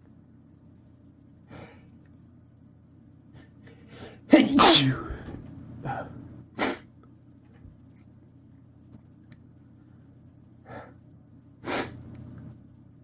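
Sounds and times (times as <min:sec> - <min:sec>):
man sneezing: 0:04.0 - 0:06.8.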